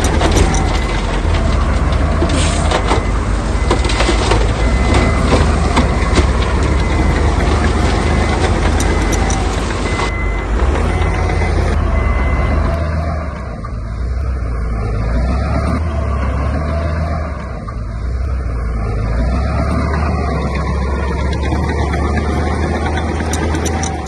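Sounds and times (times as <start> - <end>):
rattling clattering noise: 0.0 - 11.8, 19.5 - 24.0
diesel machinery running: 0.0 - 24.0
reversing alarm beeps: 0.0 - 24.0.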